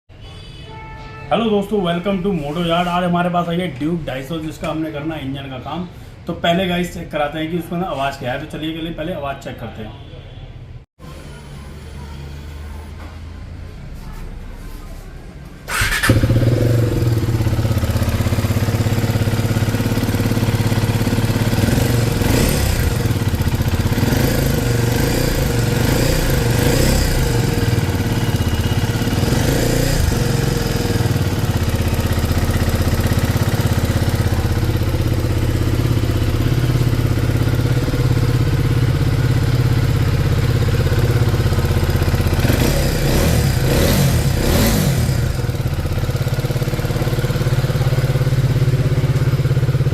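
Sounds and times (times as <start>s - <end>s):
motorcycle engine idling: 15.7s - 49.9s.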